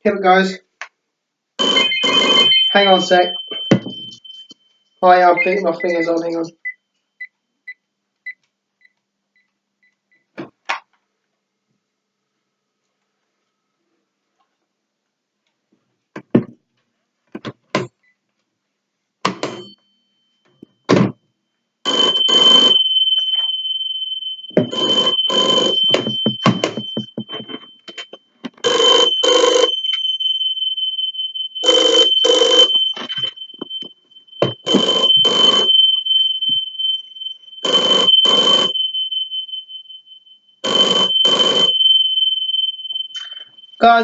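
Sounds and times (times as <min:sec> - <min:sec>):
telephone bell ringing: 0:01.6 - 0:06.4, 0:21.9 - 0:39.9, 0:40.6 - 0:44.0
steady high tone: 0:01.6 - 0:06.6, 0:21.9 - 0:44.0.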